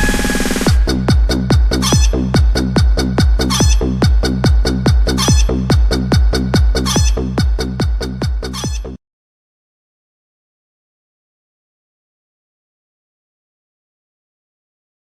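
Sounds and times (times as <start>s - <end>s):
electronic dance music: 0.0s - 9.0s
kick drum beat: 0.7s - 8.8s
chicken clucking: 3.5s - 3.9s, 6.8s - 7.2s, 8.5s - 8.8s.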